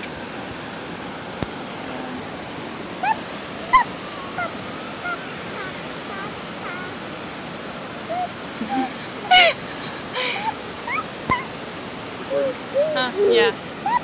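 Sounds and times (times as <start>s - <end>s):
small waterfall rushing: 0.0s - 14.0s
dog whining: 3.0s - 7.0s, 10.9s - 11.5s, 12.3s - 14.0s.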